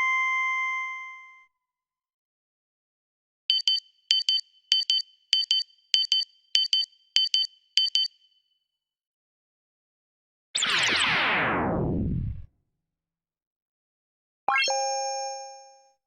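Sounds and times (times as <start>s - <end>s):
electronic double beeps: 3.5s - 8.2s.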